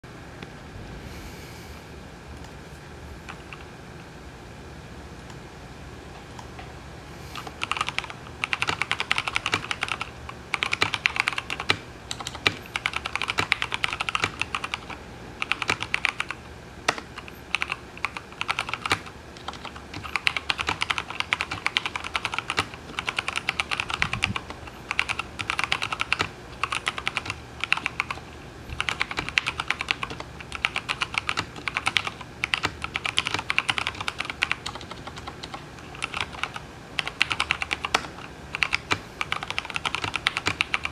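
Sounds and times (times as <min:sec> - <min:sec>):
typing on mechanical keyboard: 0:07.4 - 0:40.9.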